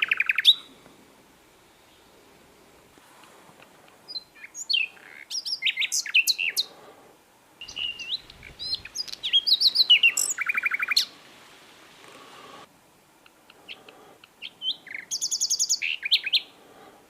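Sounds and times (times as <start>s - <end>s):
bird singing whistled notes: 4.1s - 6.7s, 7.6s - 11.1s, 14.4s - 16.5s.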